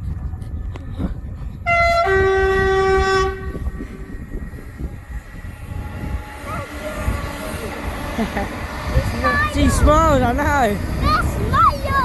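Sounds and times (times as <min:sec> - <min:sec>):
low train rumble: 0:00.0 - 0:12.0
two-tone train horn: 0:01.6 - 0:07.8.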